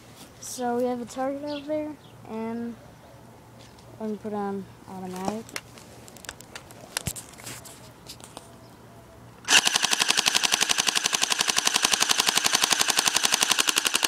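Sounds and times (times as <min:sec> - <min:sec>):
rapid burst of airsoft shots: 0:09.5 - 0:14.0.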